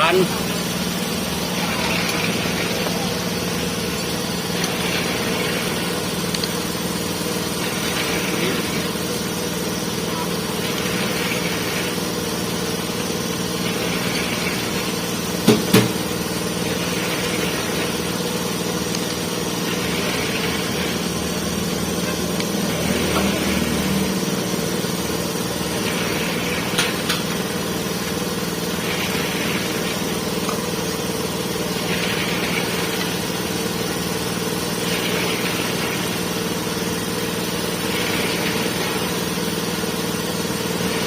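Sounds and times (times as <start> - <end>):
machine hum: 0.0 - 41.0
sharp knocks: 15.4 - 16.0.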